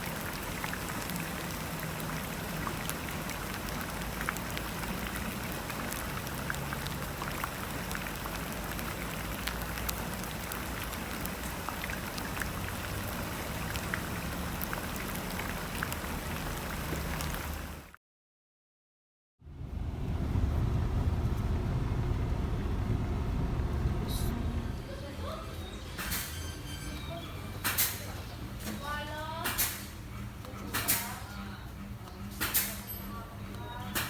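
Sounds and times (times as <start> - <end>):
steady rain: 0.0 - 18.0, 19.7 - 25.0.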